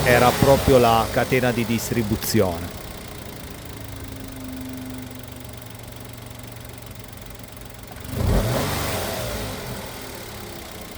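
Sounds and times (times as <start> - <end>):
car engine idling and revving: 0.0 - 10.9.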